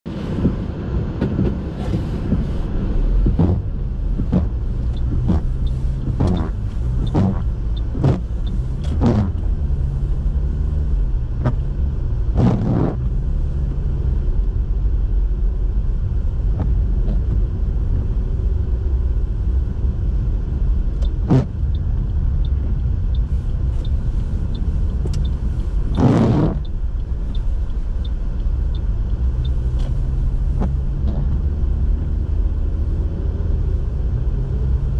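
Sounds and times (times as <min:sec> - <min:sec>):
car engine and tyres rumbling: 0:00.0 - 0:34.9
knocks and thumps: 0:03.2 - 0:08.2.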